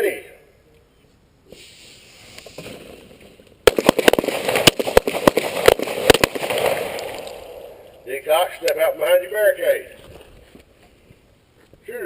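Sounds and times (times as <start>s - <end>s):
pistol shots: 3.6s - 7.9s.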